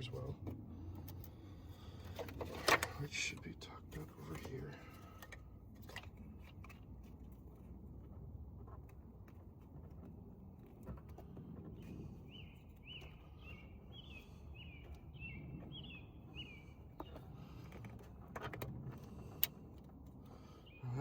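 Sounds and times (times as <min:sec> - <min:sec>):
low outdoor rumble: 0:00.0 - 0:21.0
bird chirping: 0:11.8 - 0:17.6.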